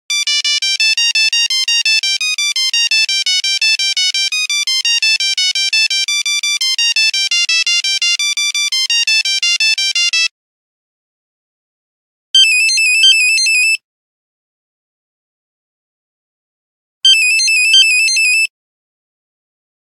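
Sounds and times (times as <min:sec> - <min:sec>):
phone ringtone beeping melody: 0:00.1 - 0:10.3, 0:12.4 - 0:13.8, 0:17.1 - 0:18.5.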